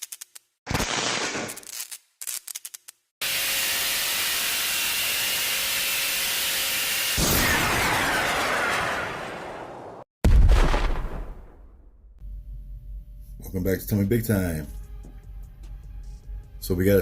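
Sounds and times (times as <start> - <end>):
sharp hit with crackling tail: 7.2 - 11.9.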